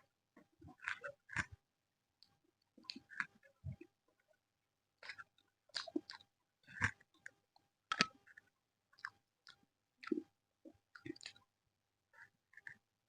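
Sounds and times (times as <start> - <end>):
wet chewing and biting: 0.8 - 1.5, 5.0 - 7.3, 7.9 - 10.2.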